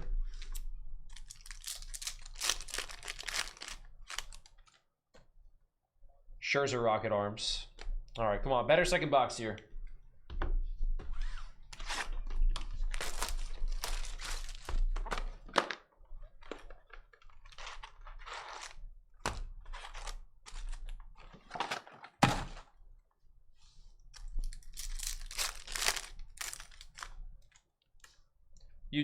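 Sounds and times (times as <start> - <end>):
plastic and foil crinkling: 0.3 - 4.8, 11.8 - 18.9, 19.6 - 22.0, 24.2 - 27.6
cardboard thunks: 21.6 - 22.7.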